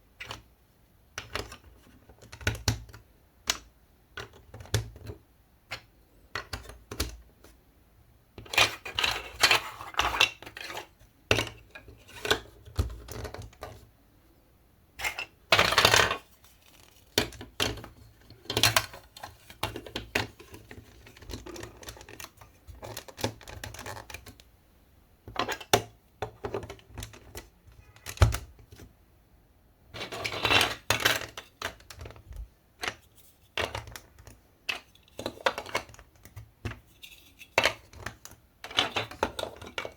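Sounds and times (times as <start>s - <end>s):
marble-run pieces clattering: 15.0s - 16.3s, 30.0s - 32.2s.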